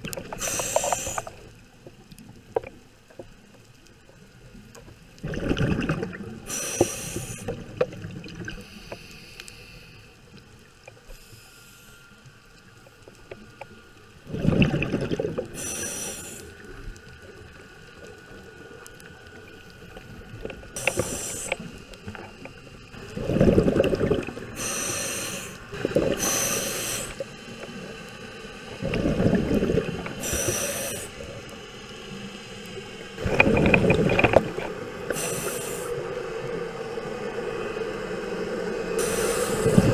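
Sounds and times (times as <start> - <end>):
regulator inhalation hiss: 0.3 - 1.5, 6.5 - 7.6, 8.6 - 10.2, 11.1 - 12.2, 15.5 - 16.7, 20.7 - 21.9, 24.5 - 27.6, 30.2 - 32.1, 35.0 - 36.2, 38.9 - 39.9
bubbles from diver exhaling: 5.2 - 6.5, 14.3 - 15.6, 23.0 - 24.5, 28.8 - 30.2, 33.2 - 34.6.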